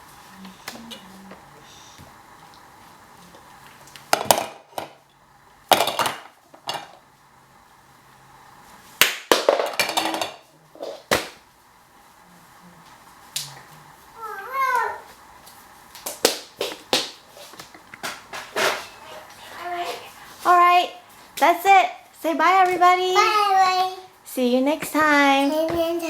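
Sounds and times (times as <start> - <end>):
wooden toys clattering: 9.5 - 10.4.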